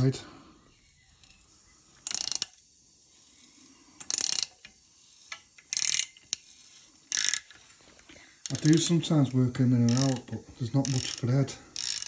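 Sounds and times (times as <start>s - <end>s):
socket ratchet clicking: 2.0s - 2.6s, 4.0s - 6.5s, 7.1s - 7.6s, 8.4s - 12.0s.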